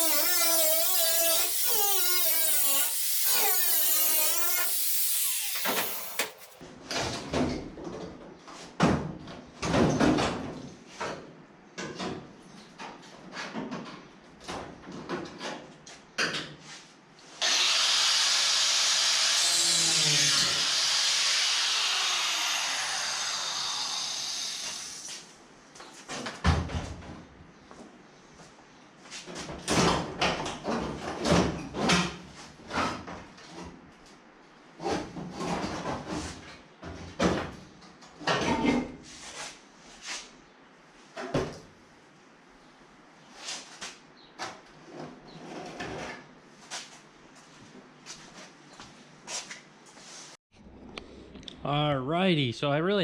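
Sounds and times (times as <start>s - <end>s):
power tool whining: 0.0s - 6.6s, 17.4s - 25.1s
tool hissing: 0.0s - 6.6s, 17.4s - 25.2s.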